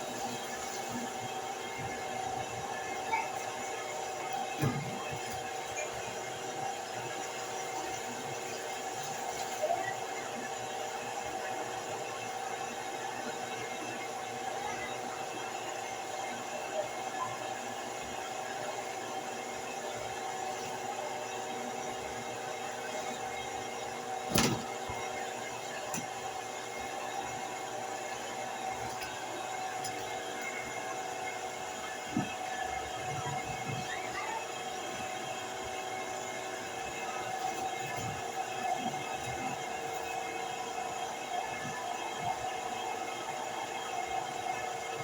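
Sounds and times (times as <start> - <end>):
constant hum: 16.3 - 45.0.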